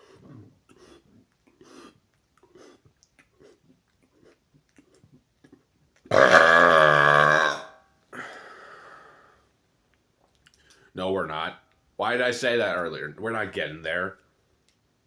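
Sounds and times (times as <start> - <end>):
man burping loudly: 6.1 - 7.8.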